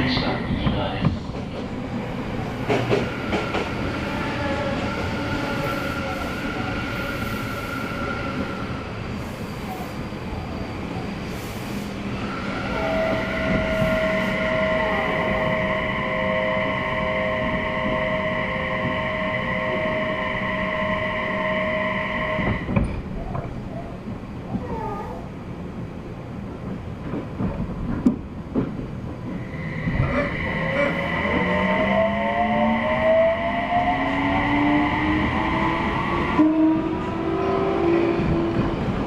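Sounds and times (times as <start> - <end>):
train rumbling: 0.0 - 39.0
high-pitched train whine: 1.6 - 23.3, 29.2 - 39.0.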